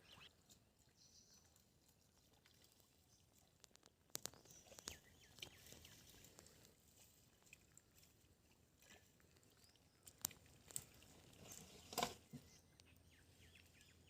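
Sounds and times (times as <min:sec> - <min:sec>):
faint clicks: 0:03.6 - 0:05.6.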